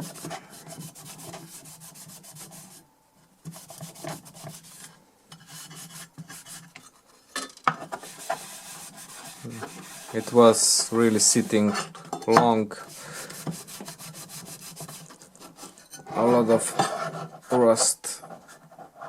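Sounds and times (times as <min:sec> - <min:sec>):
scrubbing on metal: 0:08.0 - 0:12.0.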